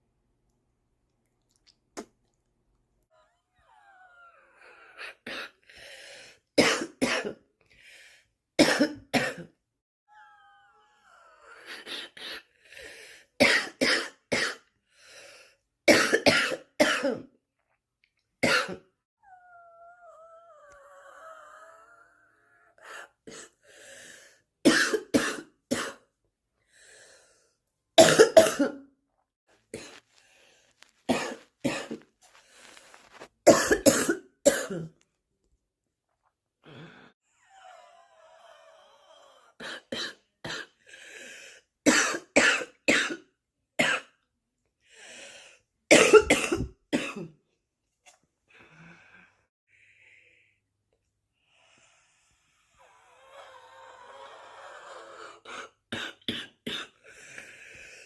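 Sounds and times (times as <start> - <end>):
person coughing harshly: 6.6 - 7.4, 8.6 - 9.6, 13.4 - 14.7, 15.9 - 17.3, 18.4 - 18.8, 24.6 - 26.0, 28.0 - 28.8, 31.1 - 32.0, 33.5 - 34.9, 41.9 - 43.2, 43.8 - 44.1, 45.9 - 47.4, 55.9 - 57.0.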